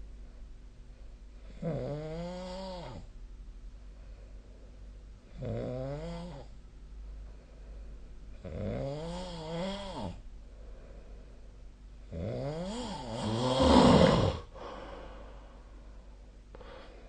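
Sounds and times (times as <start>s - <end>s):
person snoring: 1.5s - 3.0s, 8.4s - 10.2s, 12.1s - 15.4s.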